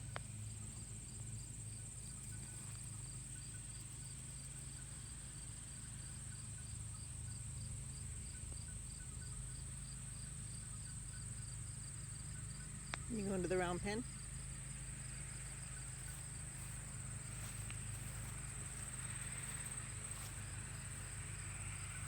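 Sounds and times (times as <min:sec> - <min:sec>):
insect chirping: 0:00.0 - 0:22.0
insect high-pitched trill: 0:08.2 - 0:22.0.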